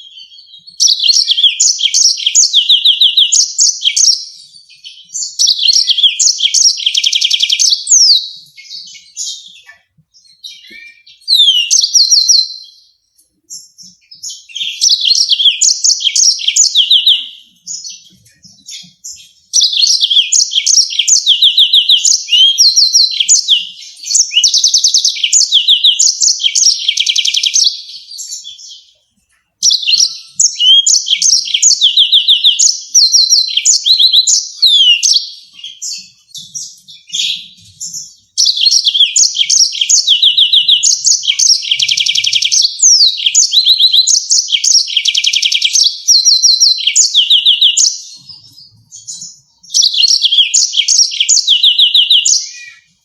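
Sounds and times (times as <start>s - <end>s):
canary singing rapid trills: 0.0s - 53.0s.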